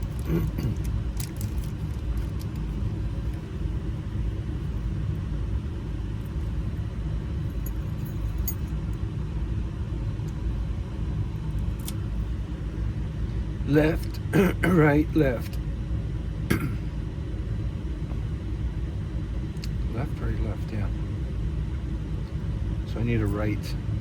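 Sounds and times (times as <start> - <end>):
low rumble: 0.0 - 14.3.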